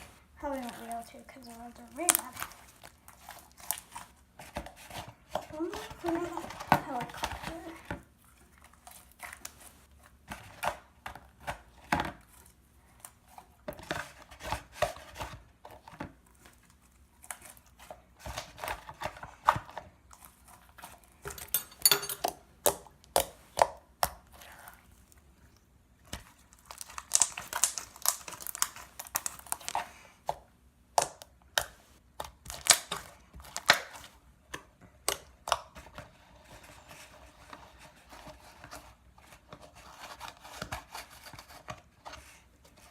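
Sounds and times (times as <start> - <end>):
hands squishing slime: 0.0 - 13.5, 22.6 - 37.9.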